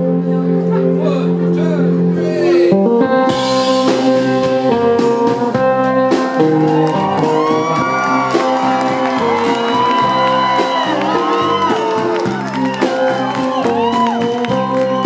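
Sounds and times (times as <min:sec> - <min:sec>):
live band playing instrumental: 0:00.0 - 0:15.0.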